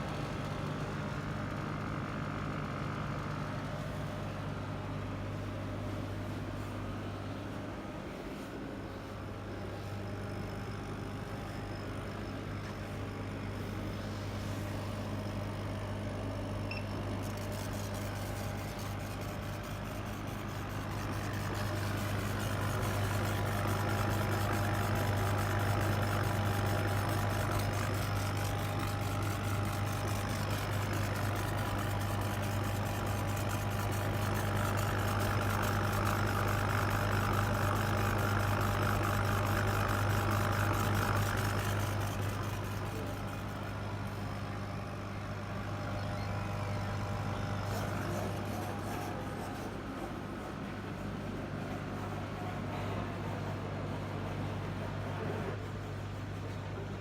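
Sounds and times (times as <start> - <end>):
laser cutter humming and whining: 0.0 - 57.0.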